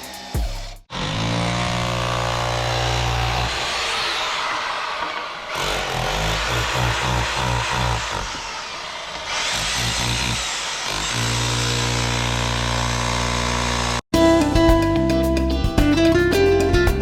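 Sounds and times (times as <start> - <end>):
electric disc cutter cutting brick: 0.0 - 14.0.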